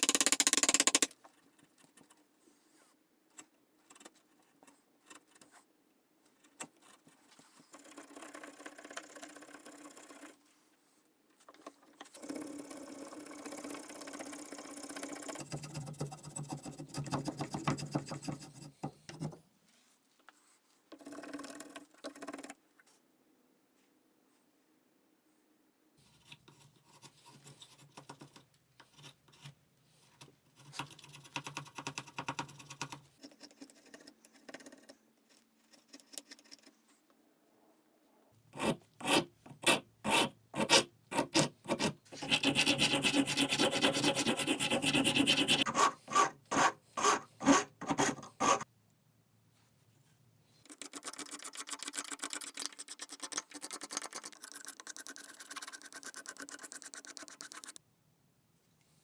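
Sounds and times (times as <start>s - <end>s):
hand filing and rubbing strokes: 38.6s - 48.7s, 52.4s - 57.8s.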